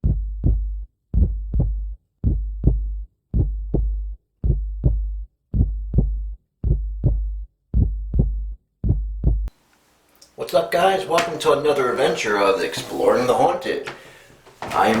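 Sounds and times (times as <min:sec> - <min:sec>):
heartbeat double thump: 0:00.0 - 0:09.5.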